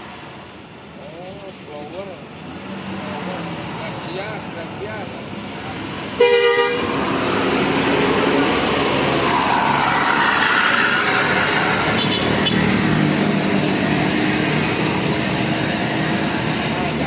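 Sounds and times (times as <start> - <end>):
bus engine and road noise: 0.0 - 17.0
bus horn blast: 6.2 - 7.0, 11.9 - 12.8.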